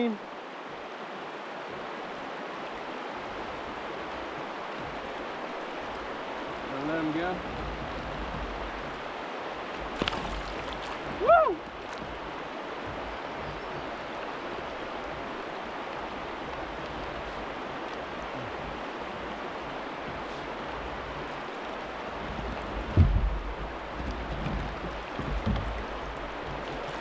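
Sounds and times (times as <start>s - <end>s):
flowing river water: 0.0s - 27.0s
person shouting: 11.2s - 11.6s
low thump: 22.6s - 26.9s.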